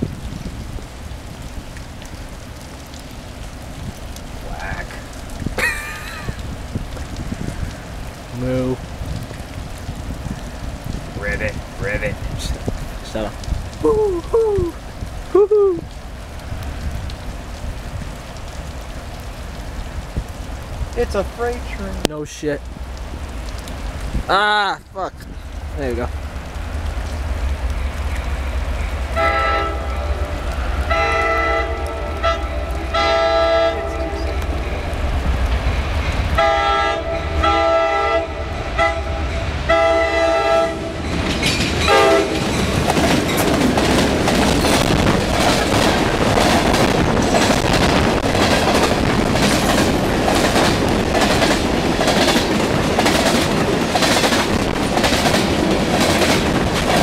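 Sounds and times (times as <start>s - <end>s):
train rumbling past: 25.4s - 57.0s
train air horn blasts: 29.2s - 34.9s, 36.4s - 41.0s, 41.9s - 42.4s
wheels clacking over rail joints: 41.0s - 57.0s.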